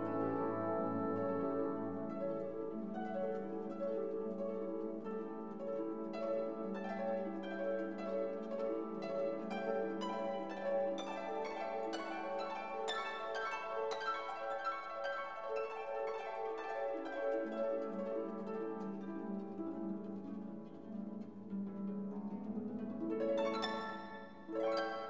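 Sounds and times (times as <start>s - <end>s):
orchestral music: 0.0s - 25.0s.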